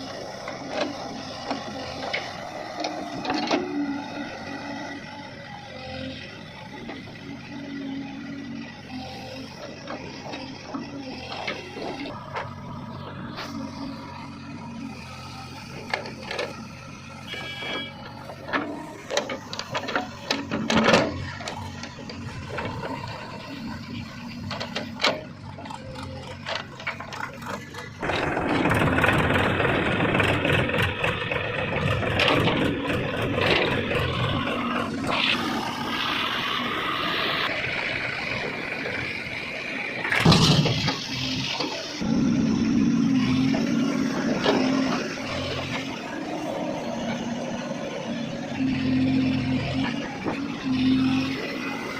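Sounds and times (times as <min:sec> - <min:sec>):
diesel engines running: 0:00.0 - 0:51.9
knocks and clatter: 0:18.3 - 0:23.1.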